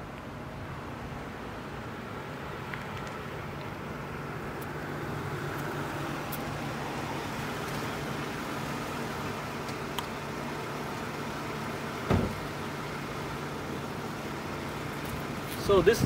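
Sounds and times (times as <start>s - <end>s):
low engine hum: 0.0s - 16.0s
road noise: 0.0s - 16.0s
faint small clicks: 2.6s - 3.7s.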